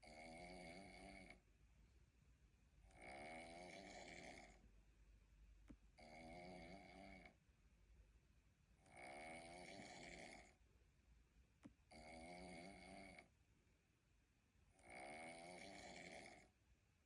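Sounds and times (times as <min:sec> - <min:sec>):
cat snoring: 0:00.0 - 0:01.4, 0:02.8 - 0:04.7, 0:06.0 - 0:07.4, 0:08.8 - 0:10.6, 0:11.9 - 0:13.3, 0:14.8 - 0:16.6.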